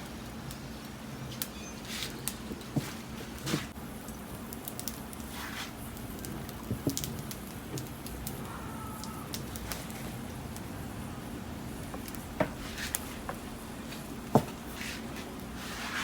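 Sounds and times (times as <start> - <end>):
fire crackling and popping: 0.0 - 16.0
dull knocks: 14.3 - 14.6.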